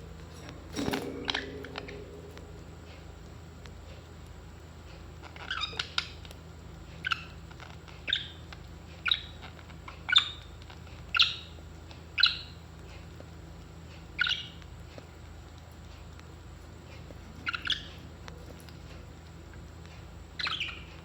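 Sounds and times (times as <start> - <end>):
low steady hum: 0.0 - 9.9.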